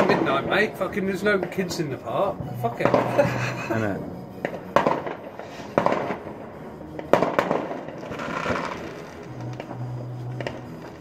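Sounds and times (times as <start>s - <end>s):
fireworks bangs: 0.0s - 11.0s
fireworks crackling: 0.0s - 11.0s.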